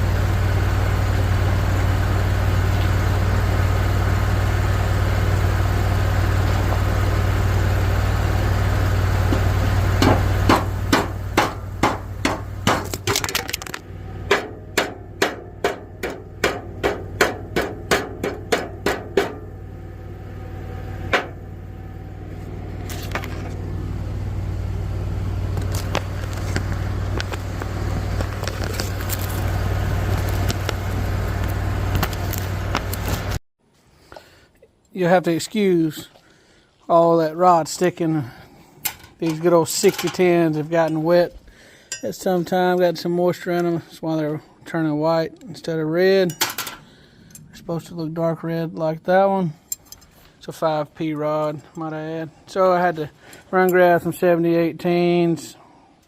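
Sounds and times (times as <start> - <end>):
steady low hum: 0.0 - 34.6, 35.4 - 56.0
hammer striking metal: 10.0 - 13.2, 14.3 - 19.5, 21.1 - 21.4.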